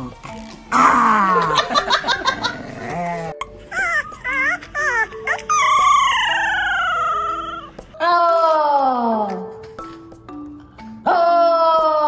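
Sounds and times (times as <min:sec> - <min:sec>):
background music: 0:00.0 - 0:12.0
dog whining and howling: 0:02.6 - 0:08.7.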